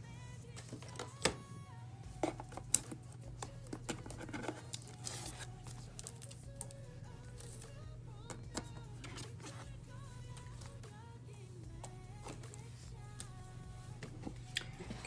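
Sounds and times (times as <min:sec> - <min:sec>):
soft background music: 0:00.0 - 0:15.0
packaging rustling and clicking: 0:02.2 - 0:06.8.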